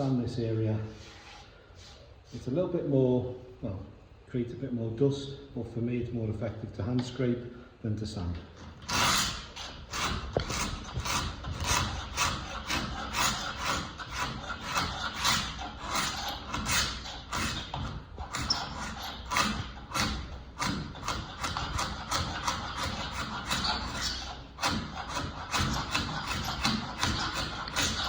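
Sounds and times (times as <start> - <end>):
hand scraper scraping wood: 8.8 - 28.0.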